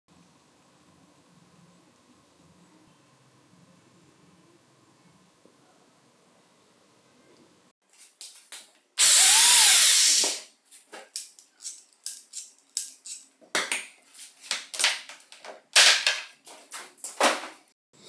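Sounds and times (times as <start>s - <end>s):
angle grinder motor running: 9.0s - 10.3s.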